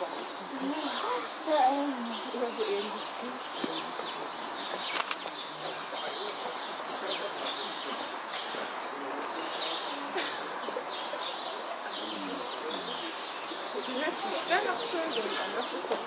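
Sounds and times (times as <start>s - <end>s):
small birds chirping: 0.0s - 16.0s
sharp clicks: 4.9s - 6.4s.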